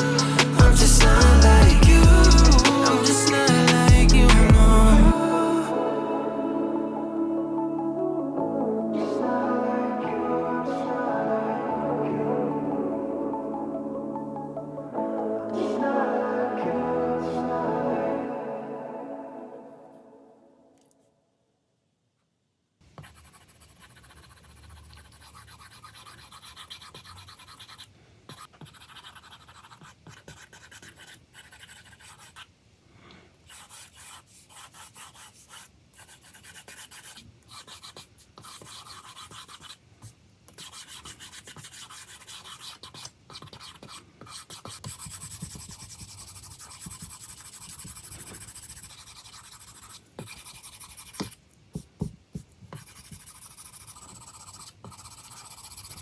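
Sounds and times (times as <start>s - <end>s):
stylus scratching on tablet screen: 0.0s - 5.1s, 22.9s - 32.5s, 33.5s - 56.0s.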